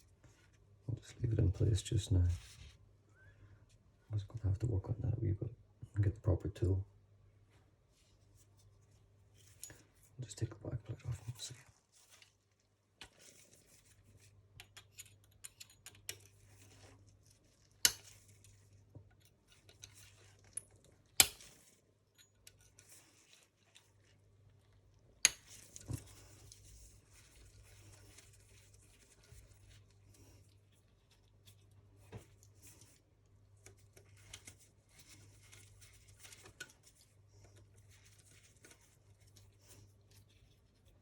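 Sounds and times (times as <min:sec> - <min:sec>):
small metal parts clicking: 0:14.6 - 0:16.4.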